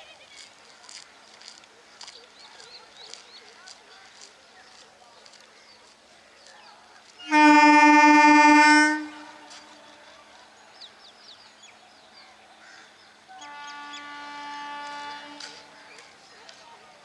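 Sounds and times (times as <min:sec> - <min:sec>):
fainter train horn: 0:07.2 - 0:10.0, 0:13.3 - 0:16.1
loud train horn blast: 0:07.2 - 0:10.0, 0:13.3 - 0:16.0.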